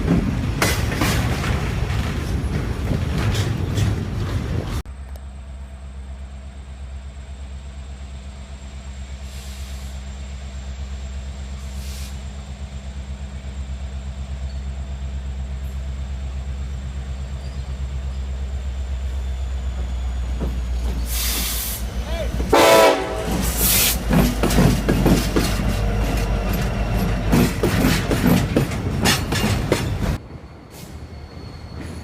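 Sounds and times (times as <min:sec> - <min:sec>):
diesel locomotive engine throbbing: 0:00.0 - 0:32.0.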